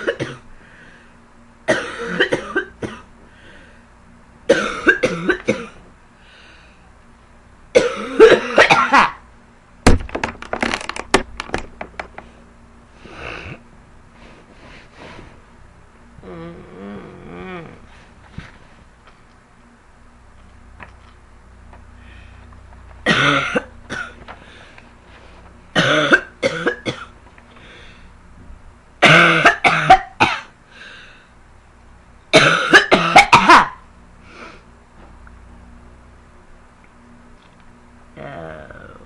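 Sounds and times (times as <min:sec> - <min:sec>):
girl coughing: 0:00.0 - 0:00.5, 0:01.7 - 0:03.1, 0:04.5 - 0:05.8, 0:07.8 - 0:09.2, 0:23.1 - 0:24.2, 0:25.8 - 0:27.1, 0:29.0 - 0:30.5, 0:32.3 - 0:33.8.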